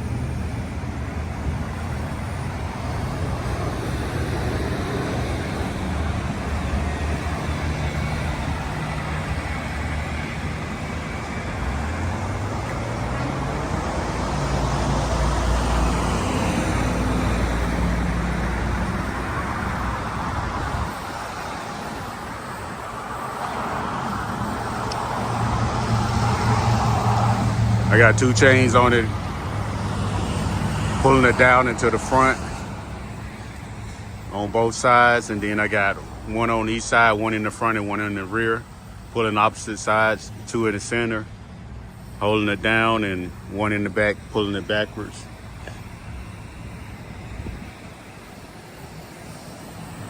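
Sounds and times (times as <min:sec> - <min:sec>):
heavy vehicle engine revving: 0:00.0 - 0:38.0
road traffic: 0:00.0 - 0:50.0.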